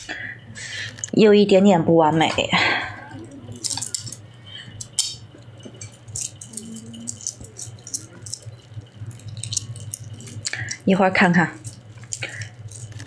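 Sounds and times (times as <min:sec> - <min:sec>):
panda crunching food: 0:03.0 - 0:10.9, 0:11.5 - 0:13.0.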